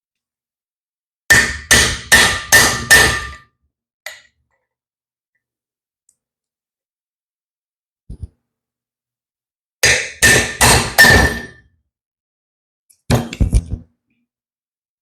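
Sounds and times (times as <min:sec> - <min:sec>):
hammer striking metal: 0:01.3 - 0:03.5, 0:09.8 - 0:11.6.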